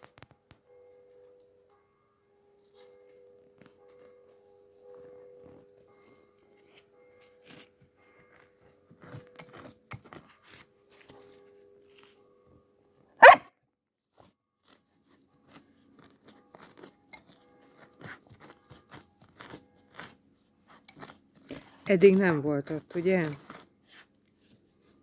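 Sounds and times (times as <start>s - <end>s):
puppy barking: 13.2s - 13.5s.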